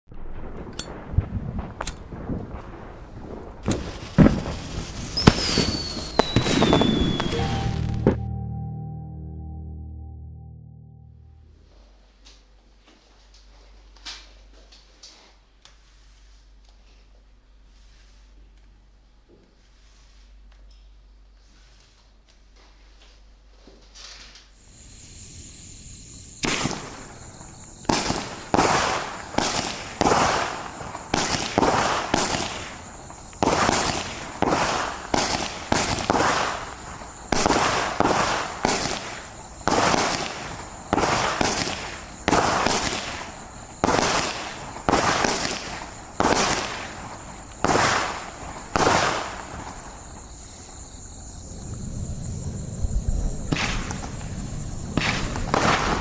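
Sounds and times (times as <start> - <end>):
fireworks bangs: 0.1 - 8.2, 26.3 - 50.6, 52.9 - 56.0
faint fuse hiss: 3.6 - 7.9, 11.7 - 52.0.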